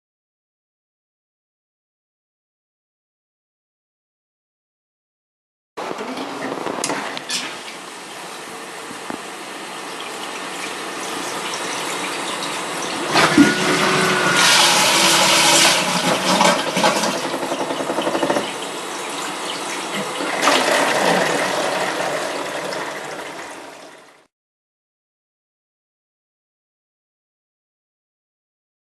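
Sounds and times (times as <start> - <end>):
toilet flushing water rushing: 6.0 - 24.3
pulsing noise: 12.7 - 18.4
brief whining tone: 12.9 - 15.2.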